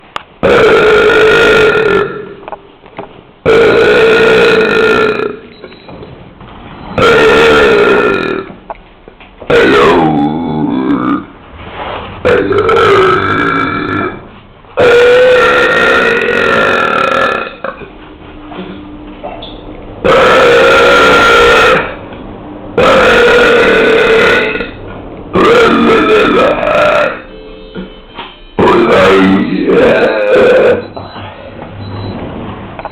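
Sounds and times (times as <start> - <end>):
long loud belches: 0.4 - 2.5, 3.4 - 5.6, 7.0 - 8.6, 9.4 - 11.4, 12.2 - 17.9, 20.0 - 22.0, 22.7 - 27.3, 28.6 - 30.9.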